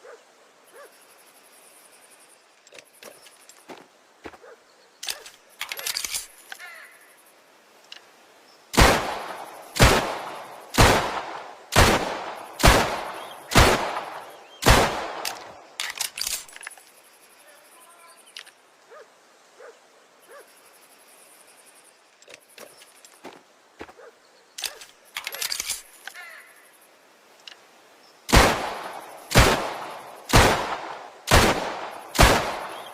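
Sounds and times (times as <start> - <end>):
pistol shots echoing: 8.8 - 15.5, 28.3 - 32.9.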